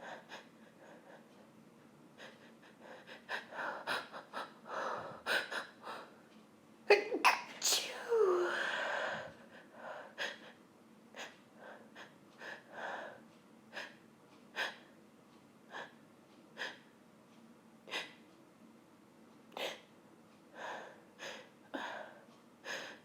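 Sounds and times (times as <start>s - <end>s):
woman exhaling breathily: 7.9s - 9.3s.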